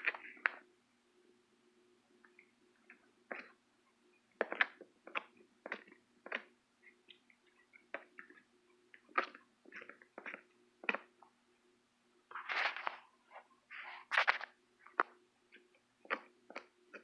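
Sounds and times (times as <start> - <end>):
faint steady hum: 0.0 - 17.0
slime squishing with pops: 4.4 - 11.2.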